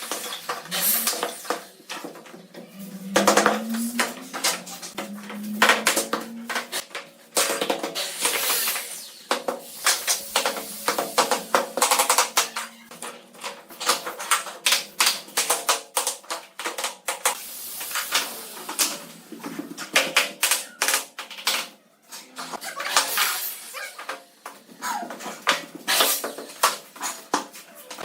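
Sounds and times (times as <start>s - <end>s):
scraping noise: 0.7s - 6.8s, 8.3s - 12.9s.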